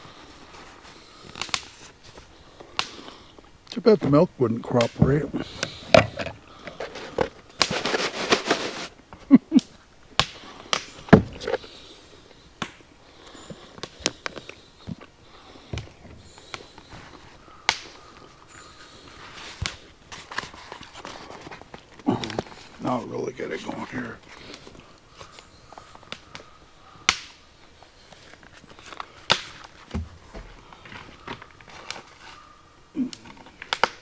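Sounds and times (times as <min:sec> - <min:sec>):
fire hissing: 0:00.0 - 0:09.4, 0:10.0 - 0:20.4
wood fire crackling: 0:00.0 - 0:34.0.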